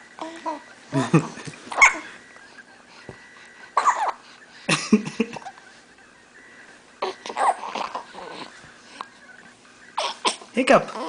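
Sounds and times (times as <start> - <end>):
baby hiccuping: 1.7 - 2.0, 3.8 - 4.2, 7.0 - 8.5, 10.0 - 11.0
baby squeaky vocal sounds: 1.7 - 2.0, 3.8 - 4.2, 7.0 - 8.6, 10.0 - 11.0.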